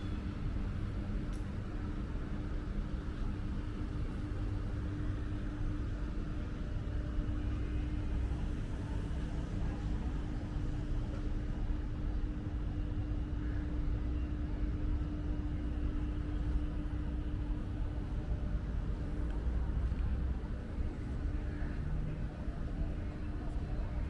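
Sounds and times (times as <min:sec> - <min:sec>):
constant low hum: 0:00.0 - 0:24.0.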